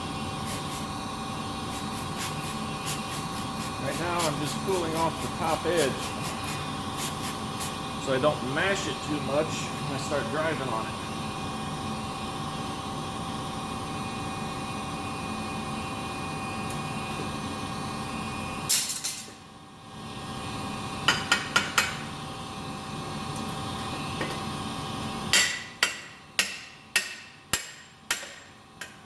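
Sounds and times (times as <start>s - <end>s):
steady background hum: 0.0s - 29.0s.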